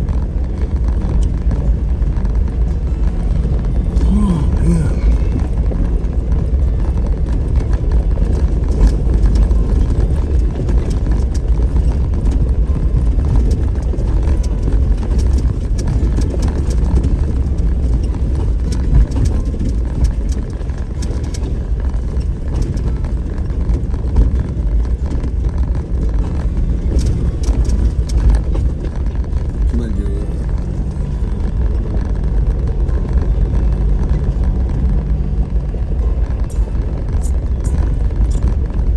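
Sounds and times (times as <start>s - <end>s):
off-road vehicle rumbling: 0.0s - 38.9s
knocks and rattles over bumps: 5.2s - 29.8s.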